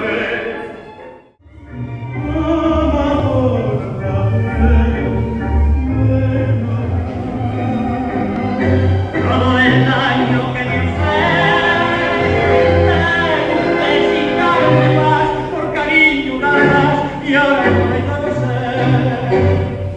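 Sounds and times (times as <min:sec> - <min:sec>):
singing voices with music: 0:00.0 - 0:19.9
low bass line: 0:01.4 - 0:09.8.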